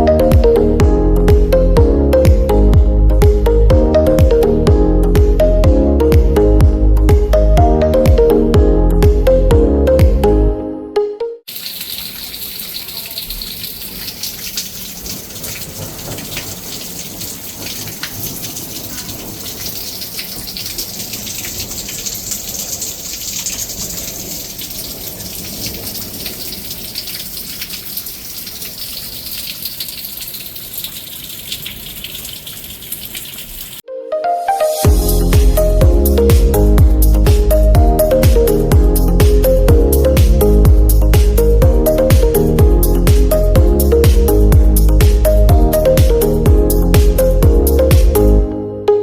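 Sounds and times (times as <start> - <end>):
hail and heavy rain pelting: 11.6 - 33.0.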